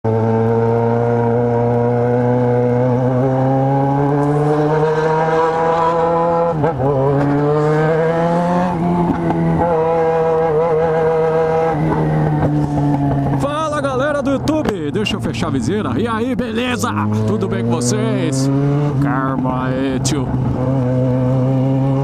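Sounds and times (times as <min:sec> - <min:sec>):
motorcycle engine accelerating: 0:00.0 - 0:22.0.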